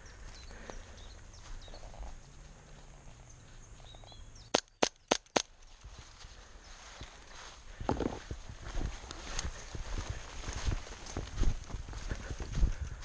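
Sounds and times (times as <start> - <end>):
faint bird chirps: 0.0 - 4.6.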